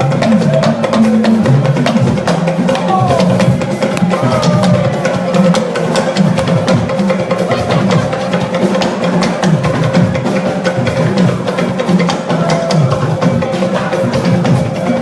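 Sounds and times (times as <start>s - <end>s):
bass line: 0.0s - 10.3s
drums: 0.0s - 15.0s
hand percussion: 0.0s - 15.0s.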